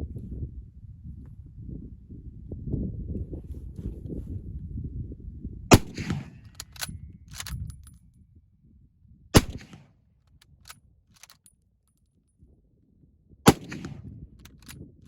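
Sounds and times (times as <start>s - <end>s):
wind rumble on microphone: 0.0s - 11.4s, 12.3s - 15.0s
rifle shots: 5.7s - 7.6s, 9.4s - 9.8s, 13.5s - 14.7s
metallic clicks of rifle bolt: 5.8s - 8.0s, 10.4s - 11.5s, 13.5s - 14.8s.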